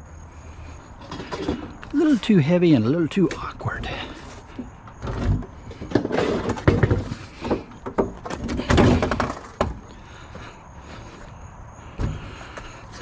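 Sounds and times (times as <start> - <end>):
scrap items knocking and rattling: 1.0 - 1.9, 4.2 - 9.9.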